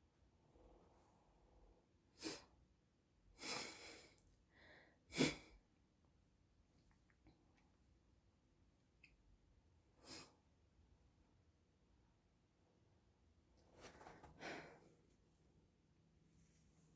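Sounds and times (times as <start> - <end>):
faint inhale: 3.4 - 5.1.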